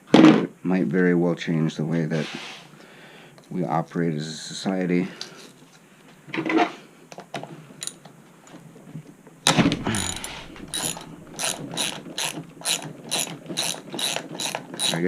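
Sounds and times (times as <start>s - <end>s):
ratchet clicking: 9.9s - 15.0s.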